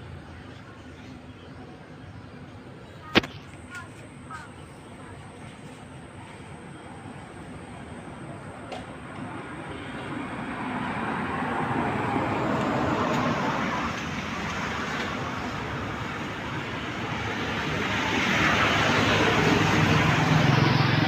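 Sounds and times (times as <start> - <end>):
rushing vehicle noise: 8.2 - 21.0.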